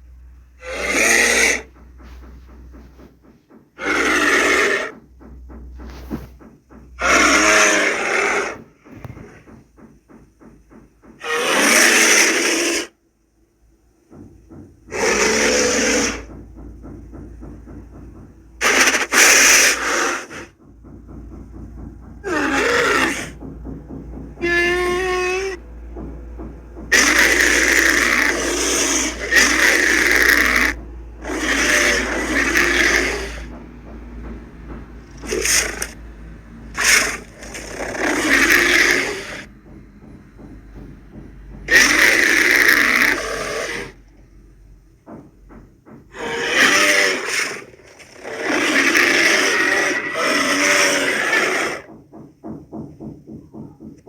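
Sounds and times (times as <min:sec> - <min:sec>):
rapid clicking or huffing: 0:00.0 - 0:54.0
bear roaring: 0:00.6 - 0:01.8, 0:03.8 - 0:05.0, 0:07.0 - 0:09.5, 0:11.2 - 0:12.9, 0:14.9 - 0:16.3, 0:18.6 - 0:20.6, 0:22.2 - 0:23.4, 0:24.4 - 0:25.6, 0:26.8 - 0:33.6, 0:35.0 - 0:36.0, 0:36.7 - 0:39.5, 0:41.7 - 0:44.0, 0:46.1 - 0:51.9.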